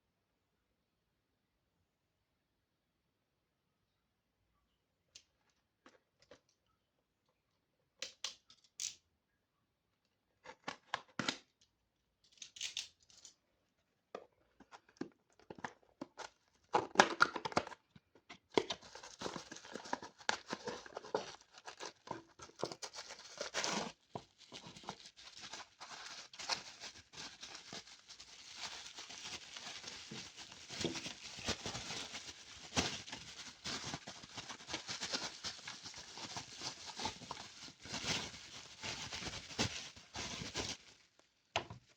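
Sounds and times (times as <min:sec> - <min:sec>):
wrapping tearing and crinkling: 0:18.6 - 0:41.3.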